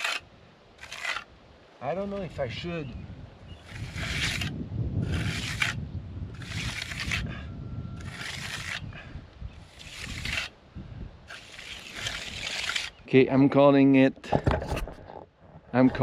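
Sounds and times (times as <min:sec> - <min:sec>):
trowel scraping wet concrete: 0:00.0 - 0:00.2, 0:00.8 - 0:01.3, 0:03.6 - 0:07.3, 0:08.0 - 0:08.9, 0:09.6 - 0:10.6, 0:11.3 - 0:13.0.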